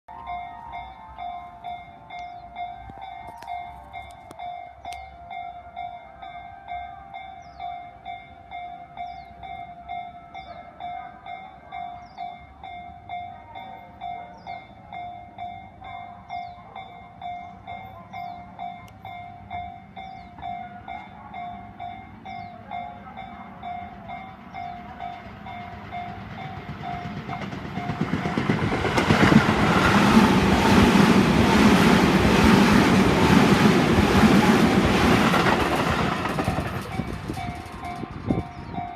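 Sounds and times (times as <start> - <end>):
level-crossing warning bell ringing: 0.1 - 38.9
electric train rushing past: 18.6 - 38.9.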